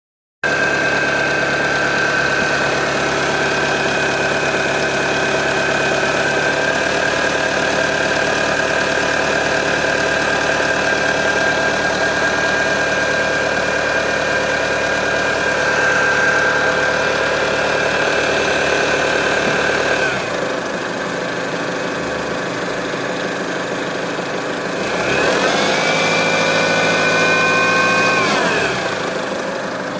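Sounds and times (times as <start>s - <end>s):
diesel engine running: 0.4s - 29.9s
high-pitched tone: 11.2s - 19.4s.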